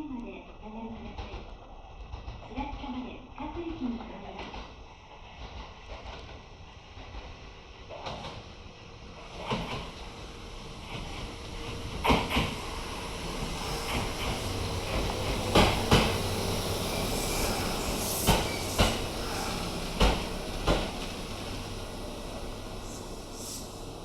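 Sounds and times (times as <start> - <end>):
train running hum: 0.0 - 24.0
train wheels knocking over rail joint: 11.8 - 22.4.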